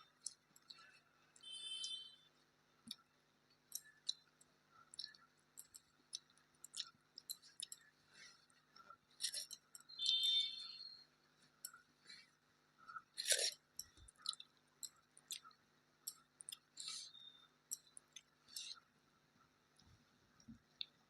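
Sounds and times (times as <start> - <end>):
utensils clinking while eating: 9.2 - 9.9, 13.2 - 15.4.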